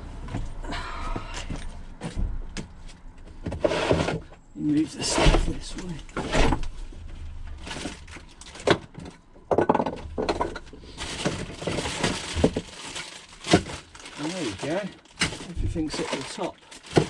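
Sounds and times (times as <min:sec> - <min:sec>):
rustling and scraping: 0:00.1 - 0:17.0
clattering and knocking of tools: 0:07.7 - 0:12.6.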